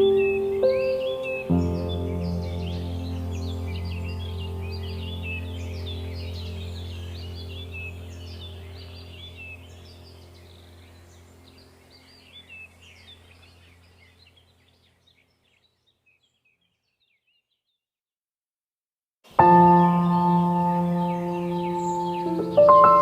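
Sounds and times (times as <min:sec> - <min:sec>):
soft music drone: 0:00.0 - 0:14.6, 0:19.4 - 0:23.0
songbirds chirping: 0:00.0 - 0:17.8, 0:19.3 - 0:23.0.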